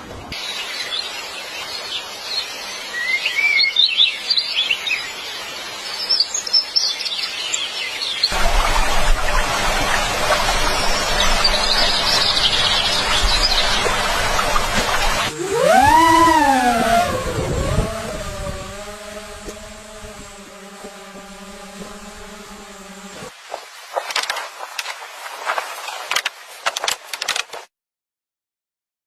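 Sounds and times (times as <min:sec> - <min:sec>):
birds chirping: 0:00.4 - 0:23.3.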